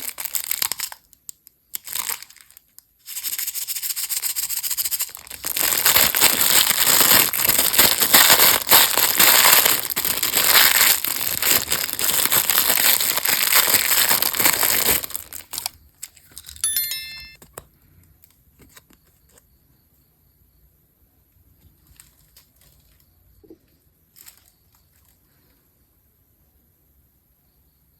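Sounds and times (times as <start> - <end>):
plastic wrapper crinkling and tearing: 0.0 - 16.7, 21.9 - 23.0, 24.1 - 25.2
short high ringing: 16.6 - 17.4.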